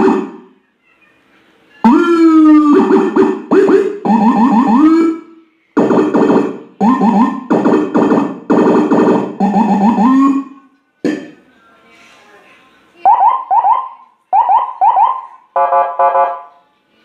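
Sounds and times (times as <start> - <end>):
electronic siren rapid chirps: 0.0 - 0.5, 1.8 - 10.6, 13.1 - 16.4.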